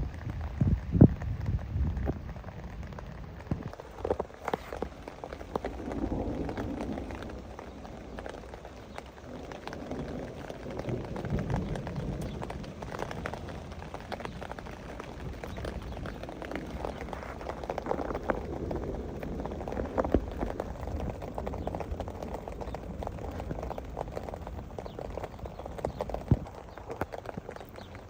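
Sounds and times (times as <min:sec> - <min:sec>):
heavy raindrops tapping: 0:00.0 - 0:28.0
steady low rain rumble: 0:00.0 - 0:28.0.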